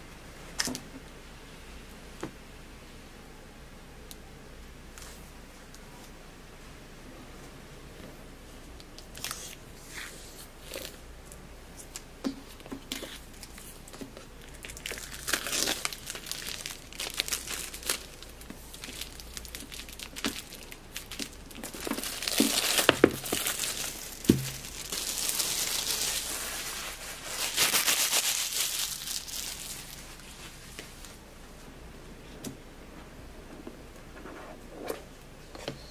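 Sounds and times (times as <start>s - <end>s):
packaging crinkling and tearing: 12.9s - 30.3s.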